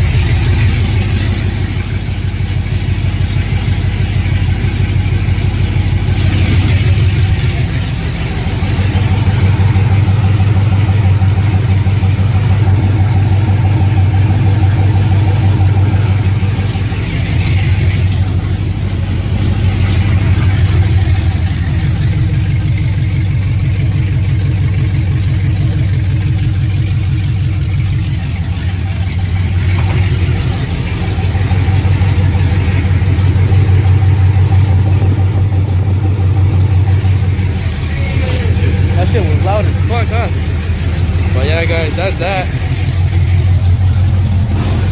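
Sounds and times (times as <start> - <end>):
loud engine idling: 0.0 - 44.9.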